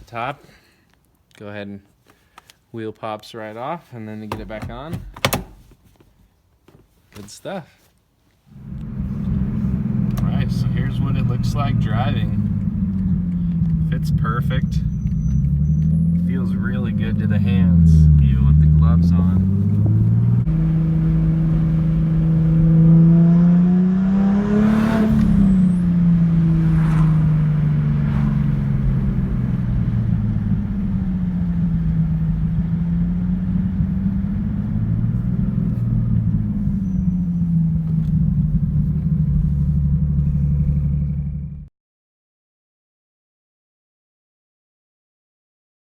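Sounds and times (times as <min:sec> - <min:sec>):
car engine heard from cabin: 0:04.3 - 0:05.6, 0:08.5 - 0:41.7.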